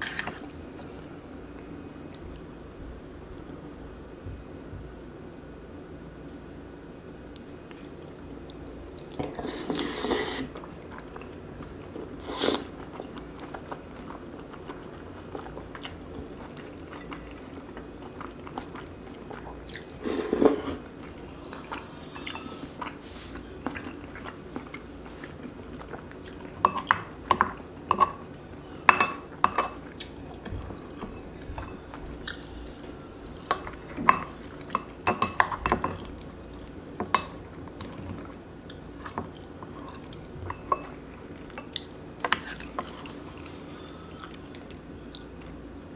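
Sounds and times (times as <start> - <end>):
chewing food: 7.4 - 28.3, 29.3 - 45.7.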